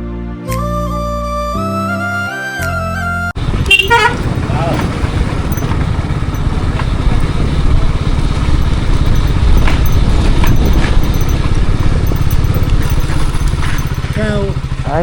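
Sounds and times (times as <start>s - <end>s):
motorcycle engine rumble: 3.4s - 15.0s
road and wind noise: 3.4s - 15.0s.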